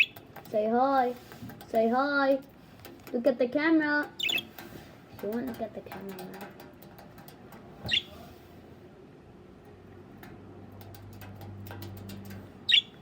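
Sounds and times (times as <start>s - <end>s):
parrot chirping: 4.2s - 4.5s, 7.9s - 8.2s, 12.7s - 13.0s.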